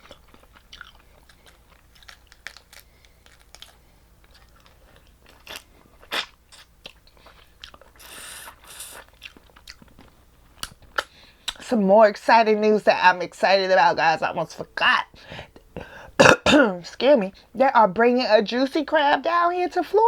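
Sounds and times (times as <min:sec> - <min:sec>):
chewing and biting crab: 0:00.0 - 0:11.6.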